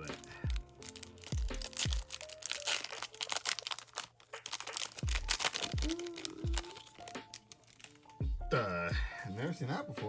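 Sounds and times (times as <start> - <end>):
foil wrapper crackling: 0.0 - 8.7
background music with deep bass: 0.0 - 10.0.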